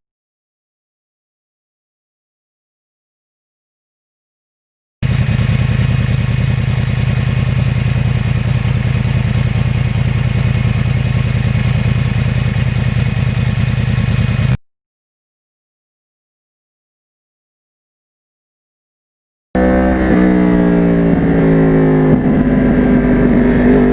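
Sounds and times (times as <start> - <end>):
motorcycle engine idling: 5.0 - 14.6, 19.6 - 23.9.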